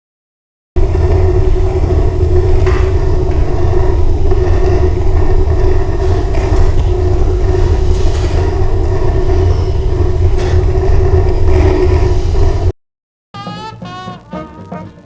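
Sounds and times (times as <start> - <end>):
constant hum: 0.8 - 12.7
furnace rumbling: 0.8 - 12.8.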